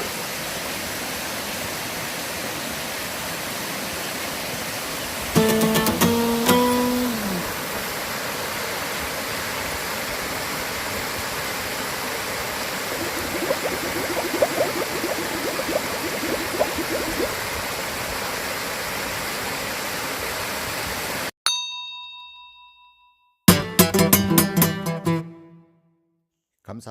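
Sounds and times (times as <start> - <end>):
guitar chord: 5.4 - 7.8
stream running: 12.0 - 19.8.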